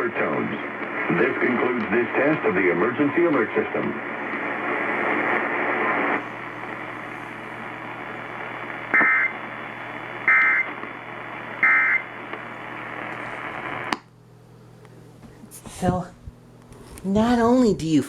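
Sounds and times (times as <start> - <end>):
radio hiss: 0.0 - 14.0.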